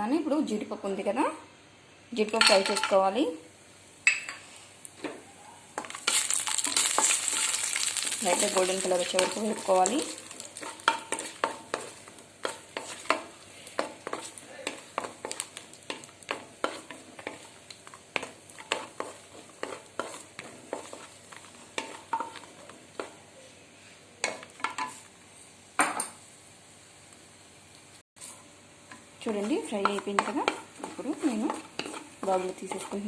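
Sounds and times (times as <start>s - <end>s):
faint sizzle: 0.0s - 33.0s
spoon scraping a pan: 8.3s - 23.2s, 29.3s - 33.0s.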